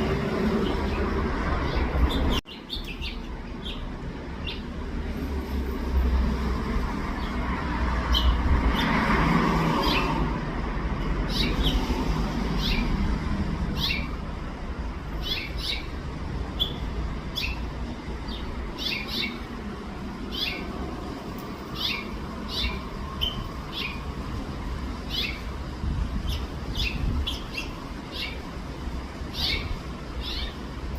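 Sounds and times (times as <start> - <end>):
finches chirping: 0.6 - 4.7, 13.8 - 14.1, 15.2 - 15.9, 16.6 - 19.5, 20.3 - 20.7, 21.7 - 24.0, 25.1 - 25.5, 26.2 - 28.5, 29.3 - 30.7.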